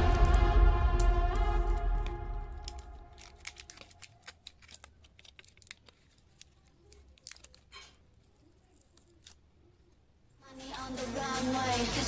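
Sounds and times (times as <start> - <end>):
background music: 0.0 - 3.7, 10.4 - 12.0
small tools tapping and scraping: 2.7 - 9.4.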